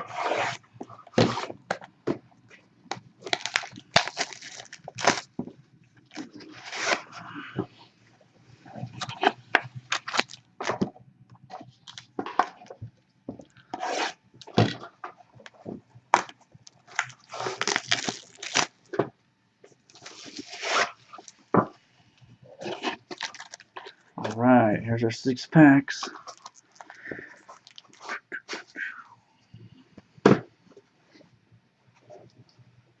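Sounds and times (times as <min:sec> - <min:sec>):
packaging tearing and crinkling: 0:02.9 - 0:05.4, 0:08.9 - 0:10.5, 0:11.8 - 0:12.1, 0:16.2 - 0:18.8, 0:19.9 - 0:21.4, 0:22.6 - 0:23.8.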